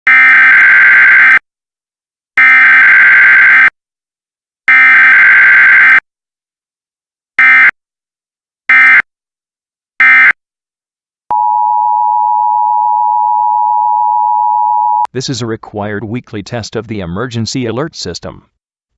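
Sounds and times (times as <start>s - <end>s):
steady attention tone: 11.3s - 15.1s.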